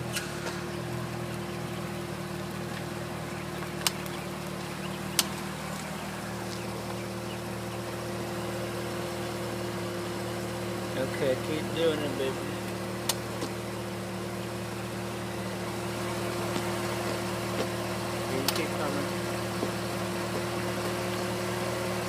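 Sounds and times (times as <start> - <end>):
car engine idling: 0.0 - 22.0
sharp pops from front wheel: 0.1 - 0.7, 3.6 - 5.5, 13.0 - 13.6.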